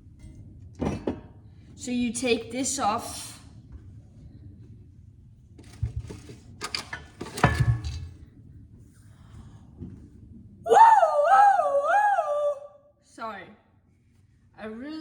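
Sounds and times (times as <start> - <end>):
stove parts knocking and clicking: 5.8 - 8.1
woman's loud vocal outburst: 10.7 - 12.8.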